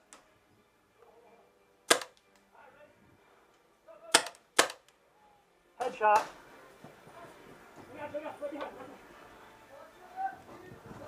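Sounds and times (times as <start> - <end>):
paintball pistol shots: 1.9 - 2.2, 4.1 - 4.9.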